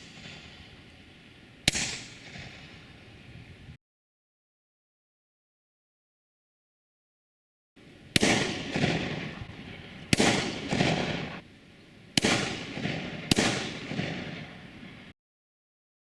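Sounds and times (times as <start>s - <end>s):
distant shotgun shots with echo: 0.0s - 0.8s, 1.6s - 3.2s, 8.1s - 11.4s, 12.2s - 15.1s.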